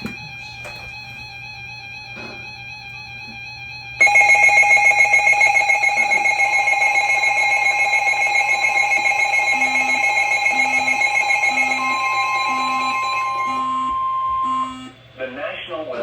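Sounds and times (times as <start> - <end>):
wavering electronic alarm tone: 0.0 - 15.0
steady high tone: 3.0 - 15.0
short low beeps: 4.0 - 15.0.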